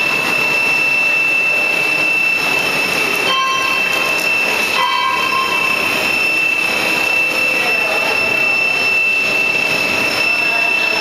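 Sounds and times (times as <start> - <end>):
machine running with whine: 0.0 - 11.0
brief squeal-like tone: 3.2 - 11.0.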